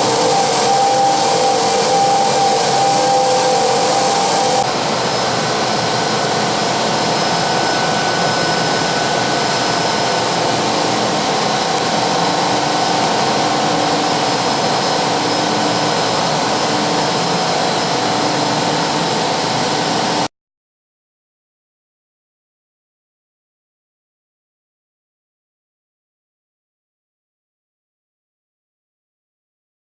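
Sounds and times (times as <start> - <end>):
faint steady tones: 0.0 - 4.7
sanding machine rushing noise: 0.0 - 20.2.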